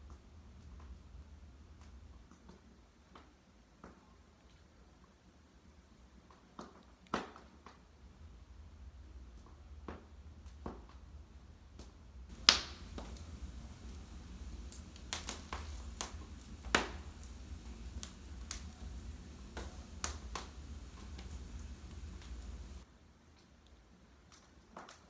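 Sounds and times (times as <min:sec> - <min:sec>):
low steady rumble: 0:12.3 - 0:22.8
sharp pops of fire: 0:12.3 - 0:22.8
wood fire crackling: 0:12.3 - 0:22.9.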